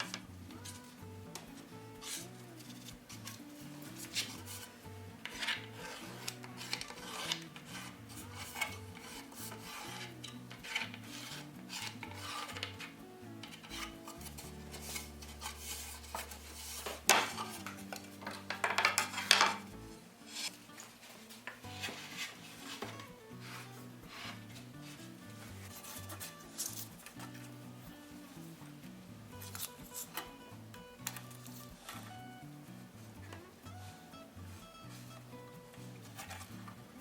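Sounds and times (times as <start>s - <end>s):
background music: 0.0s - 37.0s
hand tool scraping wood: 1.4s - 19.6s, 20.3s - 27.6s.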